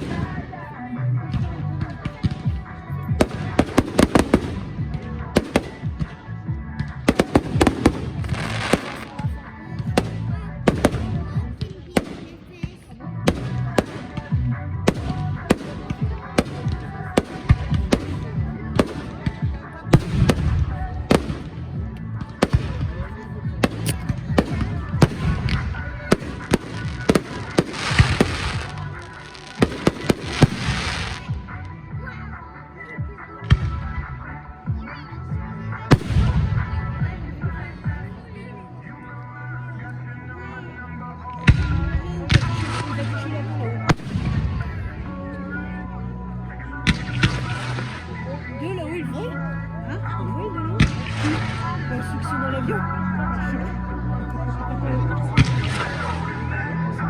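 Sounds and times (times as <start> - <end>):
music: 0.0 - 57.0
fireworks crackling: 7.1 - 11.2, 22.3 - 31.4, 46.9 - 48.2, 50.8 - 52.3
fireworks banging: 23.6 - 31.3.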